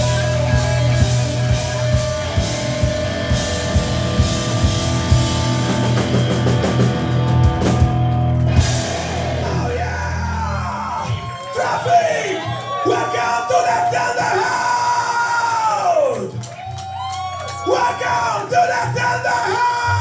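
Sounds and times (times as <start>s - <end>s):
drum kit: 0.0s - 11.3s
bass guitar: 0.0s - 11.5s
distorted electric guitars: 0.0s - 11.5s.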